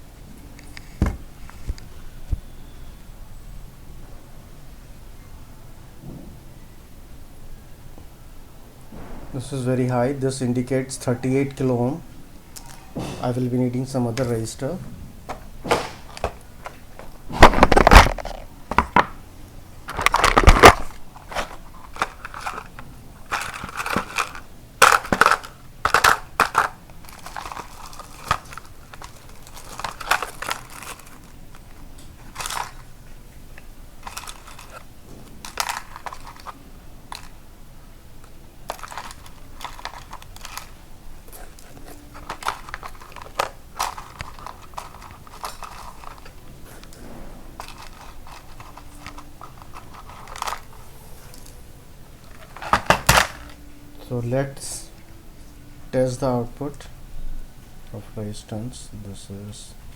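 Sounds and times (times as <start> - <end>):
packaging crinkling and rustling: 15.3 - 19.2, 19.9 - 37.4, 38.2 - 51.6, 52.2 - 53.7.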